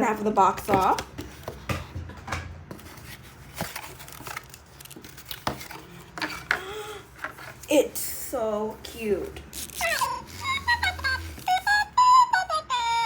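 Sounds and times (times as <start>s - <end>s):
packaging being pulled apart: 9.5s - 11.6s.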